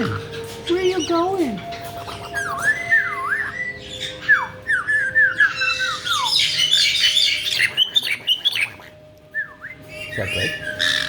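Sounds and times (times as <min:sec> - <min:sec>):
parrot squawks: 0:00.0 - 0:11.0
parrot whistling: 0:00.1 - 0:11.0.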